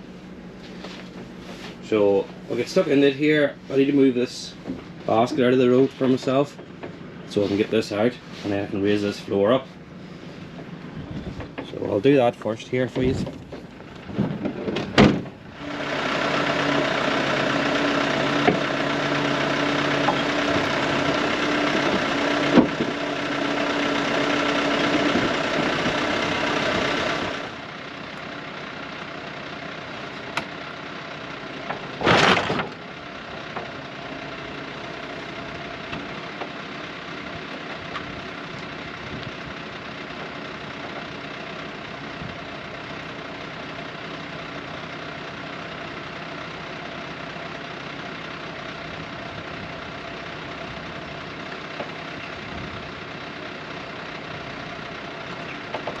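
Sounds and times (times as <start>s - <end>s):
motor running: 15.5s - 28.3s.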